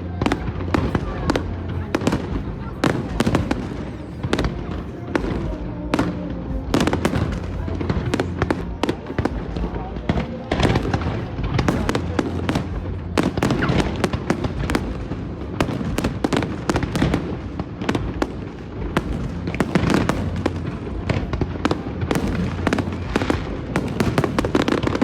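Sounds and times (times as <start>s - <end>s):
fireworks bangs and crackles: 0.0s - 25.0s
low rumble: 0.0s - 25.0s.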